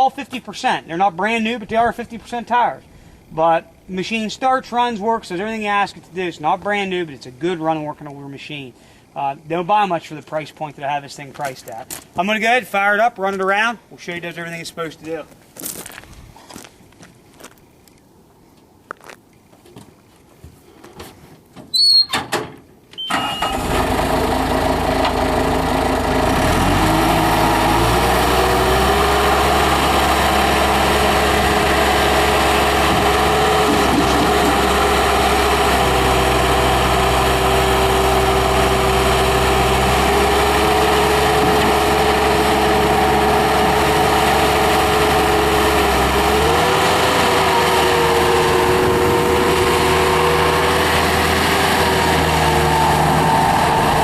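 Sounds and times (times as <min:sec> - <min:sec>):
diesel engine starting and running: 0:22.4 - 0:54.0.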